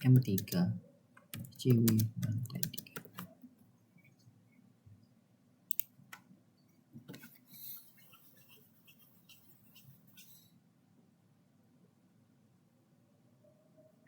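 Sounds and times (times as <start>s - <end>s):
sharp clicks: 1.2s - 3.3s, 5.7s - 6.3s.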